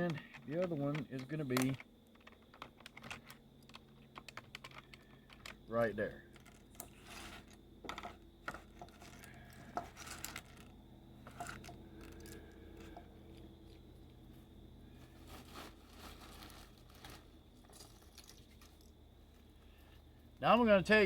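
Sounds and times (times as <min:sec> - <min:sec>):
plastic parts clicking and scraping: 0:00.0 - 0:13.9.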